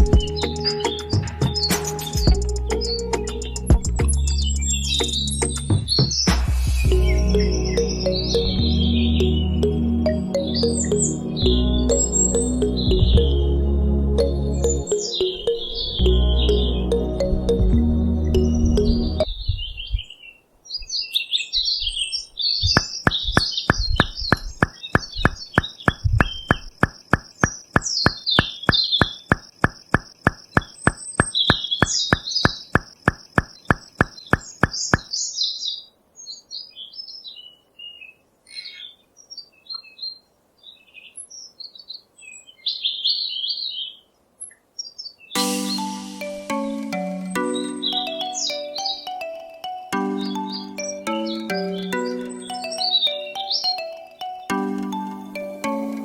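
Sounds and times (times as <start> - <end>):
small birds chirping: 0.0 - 13.4, 18.2 - 54.5
thin high tone: 6.9 - 19.3, 45.4 - 56.0
regular clicking: 22.7 - 35.1.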